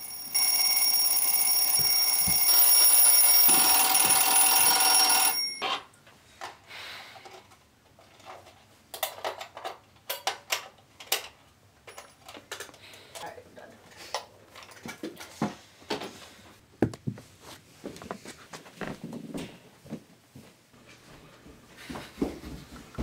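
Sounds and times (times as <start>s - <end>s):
alarm clock ringing: 0.0s - 5.8s.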